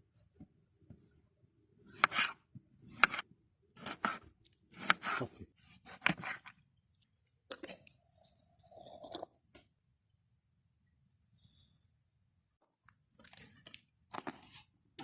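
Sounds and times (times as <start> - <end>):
knife scraping a board: 1.8 - 3.2, 3.8 - 6.5
knife cutting vegetables on a board: 1.8 - 6.5.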